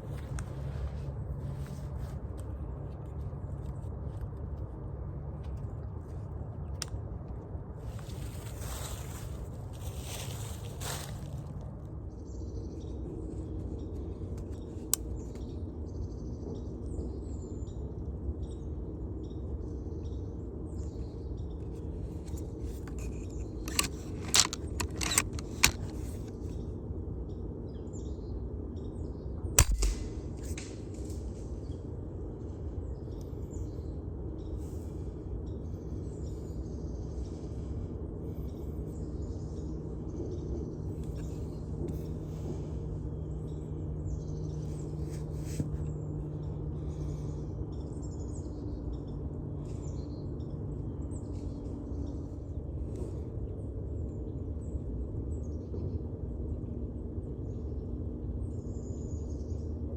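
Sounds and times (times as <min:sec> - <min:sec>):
low outdoor rumble: 0:00.0 - 0:59.9
small birds chirping: 0:07.8 - 0:59.9
sharp clicks: 0:22.3 - 0:26.5, 0:29.6 - 0:31.2
sharp crack: 0:29.6 - 0:31.2.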